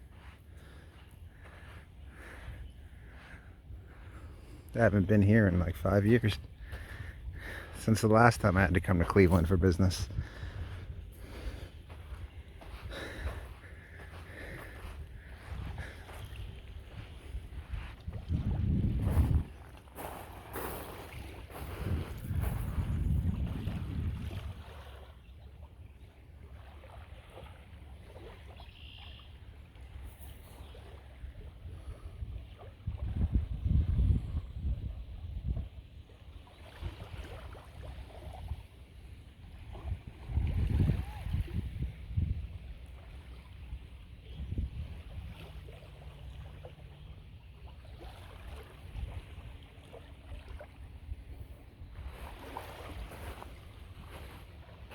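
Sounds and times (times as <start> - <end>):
lake waves lapping: 0.0 - 54.9
wind rumble on microphone: 8.8 - 25.0, 31.2 - 36.0, 39.4 - 46.5, 48.0 - 49.7, 50.3 - 54.9.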